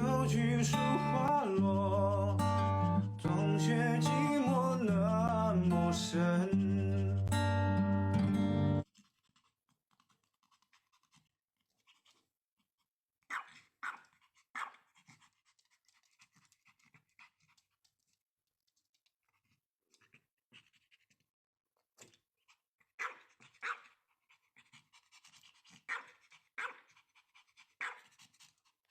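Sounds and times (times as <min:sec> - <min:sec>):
dog panting: 0:00.1 - 0:07.9, 0:13.8 - 0:18.2, 0:22.5 - 0:28.9.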